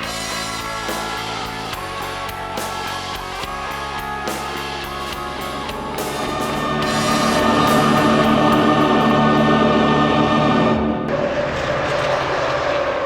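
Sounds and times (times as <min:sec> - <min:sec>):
score music with steady beat: 0:00.0 - 0:09.5.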